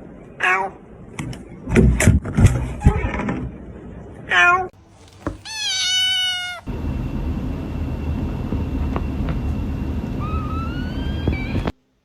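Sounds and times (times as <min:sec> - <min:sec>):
cat meowing: 0:04.3 - 0:04.7, 0:05.4 - 0:06.7
faint high whine: 0:06.7 - 0:11.8
low rumbling noise: 0:06.7 - 0:11.8.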